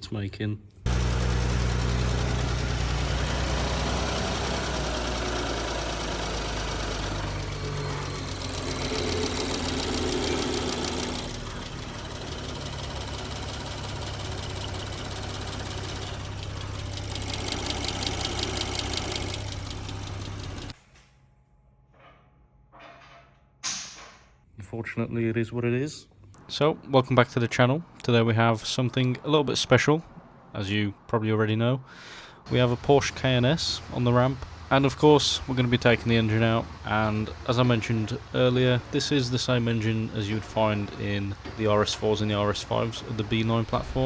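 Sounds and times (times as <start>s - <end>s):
car engine running: 0.9s - 20.8s, 32.5s - 44.0s
rapid engine ticking: 0.9s - 20.8s, 32.5s - 44.0s.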